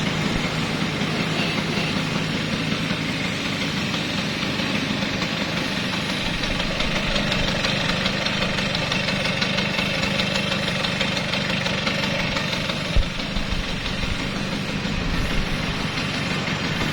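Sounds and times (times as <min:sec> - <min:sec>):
scooter engine idling: 0:00.0 - 0:16.9.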